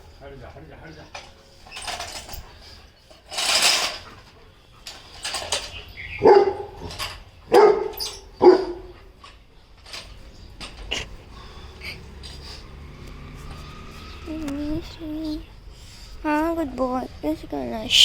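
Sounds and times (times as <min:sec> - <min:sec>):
puppy barking: 0:06.2 - 0:09.0.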